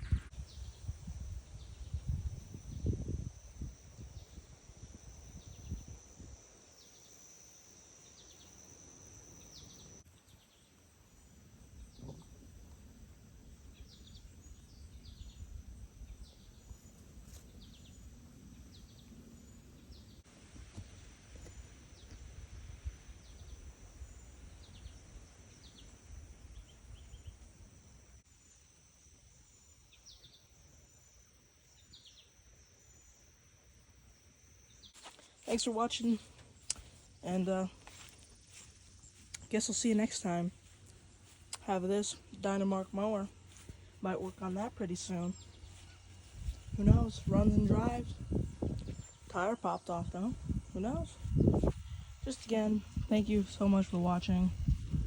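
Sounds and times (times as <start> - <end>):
insect drone: 0.0 - 55.0
birds chirping: 6.7 - 20.2, 34.4 - 55.0.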